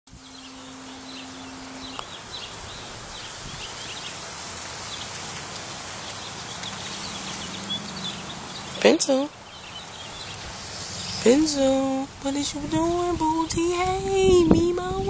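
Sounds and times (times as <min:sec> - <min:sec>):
faint low hum: 0:00.1 - 0:03.4
small birds chirping: 0:00.1 - 0:14.3
steady outdoor hiss: 0:00.1 - 0:15.0.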